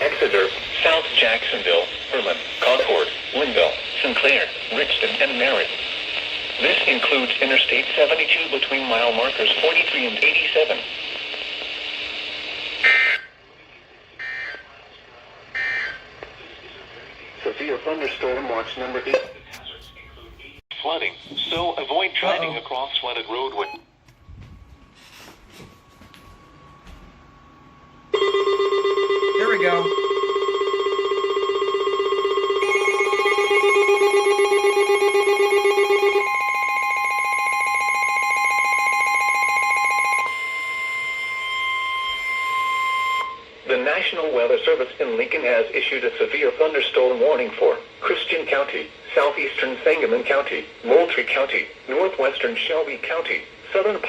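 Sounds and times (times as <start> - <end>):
radio hiss: 0.0 - 23.8, 43.6 - 54.0
steady warning tone: 14.1 - 20.6, 28.2 - 43.6
low pulsing alarm tone: 28.2 - 43.5.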